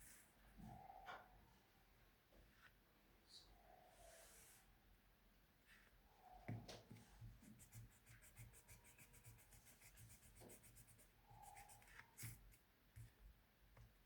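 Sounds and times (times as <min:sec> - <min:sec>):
pen scribbling on paper: 0:07.4 - 0:12.4.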